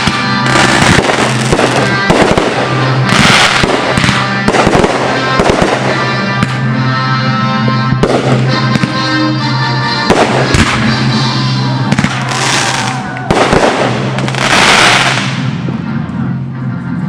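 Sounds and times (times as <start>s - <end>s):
fireworks bangs: 0.0s - 6.7s, 7.9s - 9.2s, 10.0s - 15.7s
music playing: 0.0s - 17.0s.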